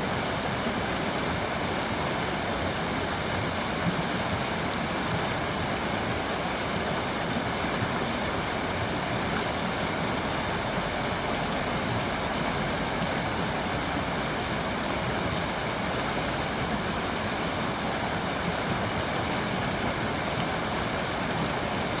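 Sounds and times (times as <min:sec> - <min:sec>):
creek water babbling over stones: 0:00.0 - 0:22.0.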